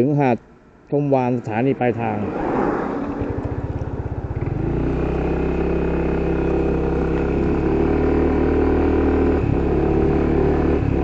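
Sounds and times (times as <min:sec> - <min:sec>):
motorcycle engine running: 0:03.0 - 0:11.0.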